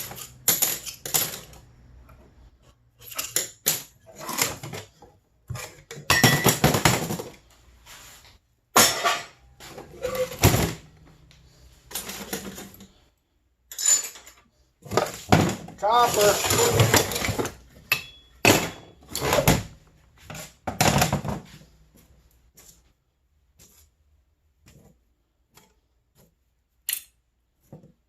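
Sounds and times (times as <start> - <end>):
scrap metal clanking: 8.8 - 10.9.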